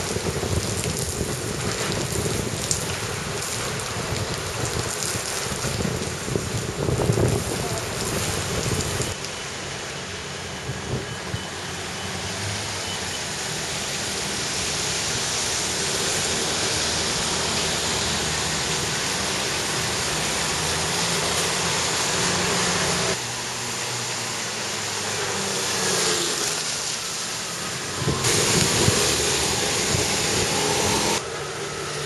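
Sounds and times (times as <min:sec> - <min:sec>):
strong wind: 0:00.0 - 0:09.2, 0:10.5 - 0:11.5, 0:27.7 - 0:31.3
heavy rain: 0:00.0 - 0:32.0.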